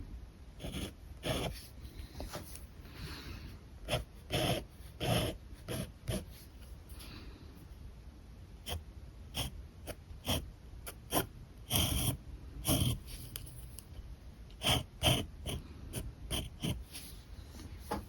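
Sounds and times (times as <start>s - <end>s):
marker scratching on paper: 0.6s - 1.8s, 3.8s - 6.7s, 8.7s - 13.6s, 14.6s - 17.2s.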